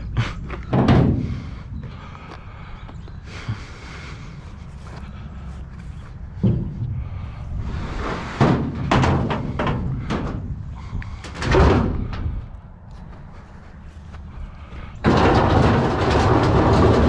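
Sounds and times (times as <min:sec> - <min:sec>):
metal scrap knocking and scraping: 0:00.3 - 0:01.7, 0:06.3 - 0:12.5, 0:14.8 - 0:17.0
metal clatter: 0:08.0 - 0:12.4, 0:15.0 - 0:17.0.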